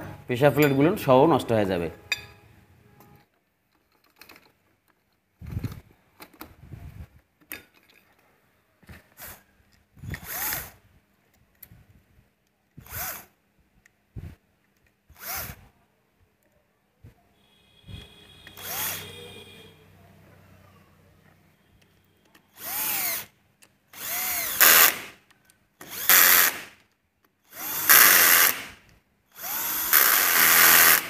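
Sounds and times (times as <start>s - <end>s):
small metal clicks: 3.0s - 6.6s
power drill bursts: 10.2s - 10.8s, 15.1s - 15.6s, 17.9s - 19.6s, 22.5s - 23.3s, 23.9s - 25.2s, 25.8s - 26.8s, 27.4s - 31.0s.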